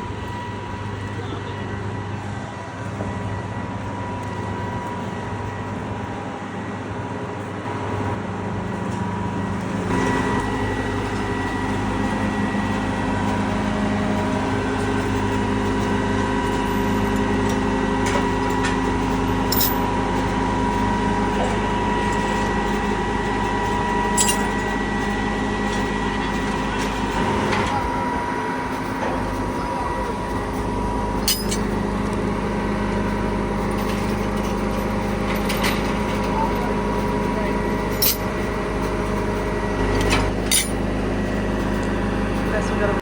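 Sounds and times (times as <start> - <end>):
diesel engine running: 0.0 - 43.0
steady whine: 0.0 - 43.0.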